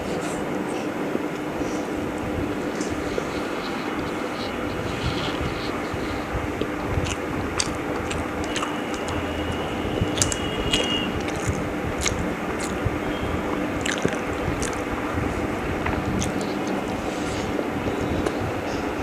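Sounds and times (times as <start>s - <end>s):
steady background hum: 0.0s - 19.0s
person chewing wetly: 5.6s - 15.0s, 16.0s - 17.0s.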